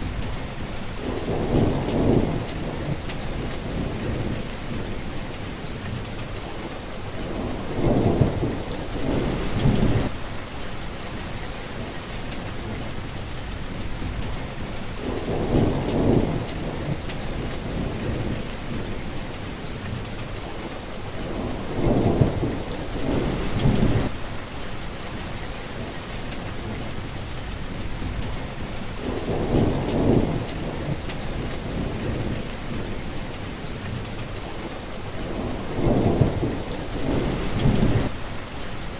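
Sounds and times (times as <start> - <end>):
steady rain falling: 0.0 - 38.9
thunder rumbling: 1.0 - 4.9, 7.2 - 10.2, 15.0 - 18.9, 21.1 - 24.3, 28.0 - 33.4, 34.0 - 38.3.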